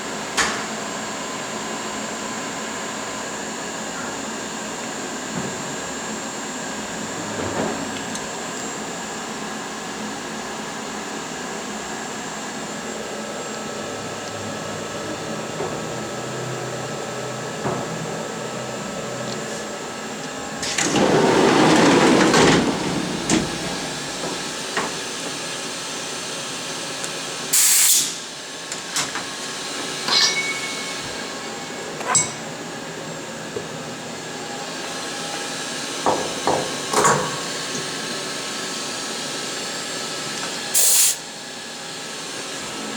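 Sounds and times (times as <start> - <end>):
machining centre humming: 17.6 - 26.4, 28.7 - 38.3.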